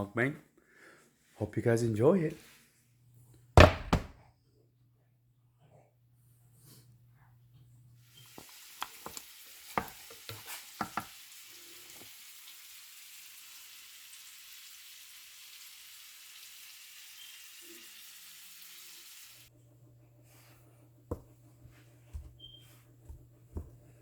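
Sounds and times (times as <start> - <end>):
food sizzling in a pan: 8.0 - 19.5.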